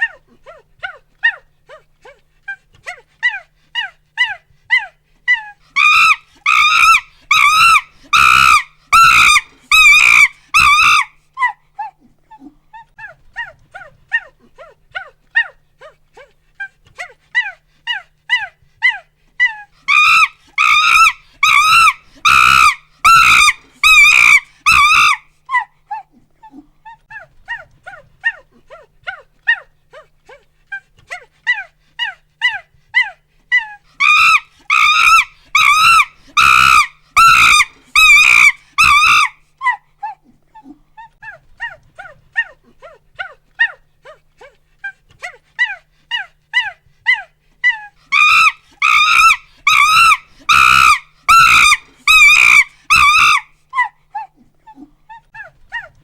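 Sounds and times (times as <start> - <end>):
chimpanzee hoots and screams: 0.0 - 56.0.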